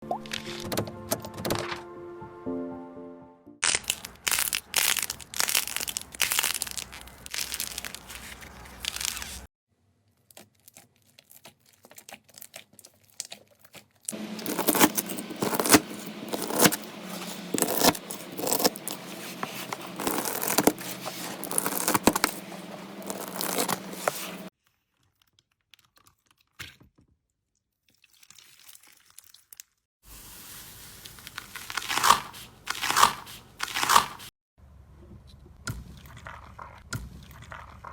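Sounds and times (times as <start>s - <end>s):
slime crackling and popping: 3.6s - 9.4s, 17.5s - 24.4s.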